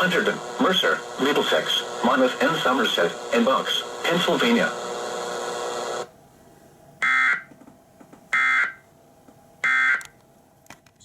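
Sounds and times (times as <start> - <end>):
steady radio noise: 0.0 - 6.1.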